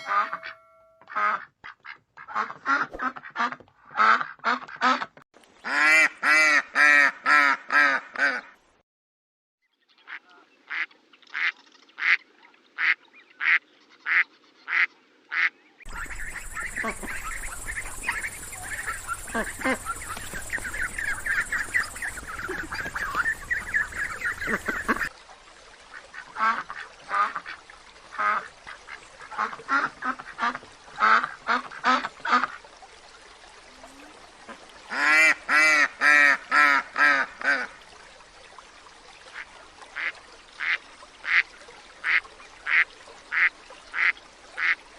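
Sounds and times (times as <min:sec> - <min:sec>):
ducks and geese calling: 0:12.8 - 0:25.1.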